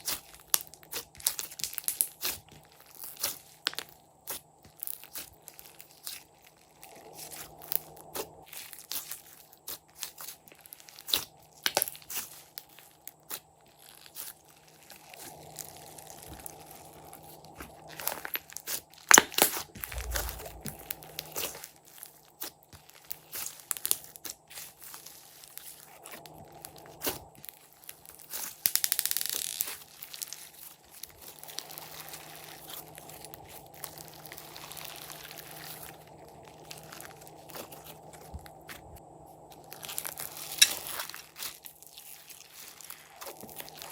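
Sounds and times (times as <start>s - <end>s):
slime kneaded by hand: 14.0s - 21.6s
slime rustling: 19.8s - 22.0s, 29.6s - 43.9s.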